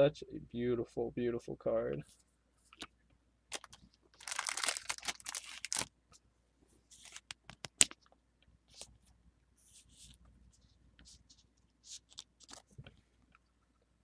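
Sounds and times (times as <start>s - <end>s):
plastic packaging crinkling: 3.5s - 5.9s, 7.0s - 8.0s, 12.0s - 12.7s.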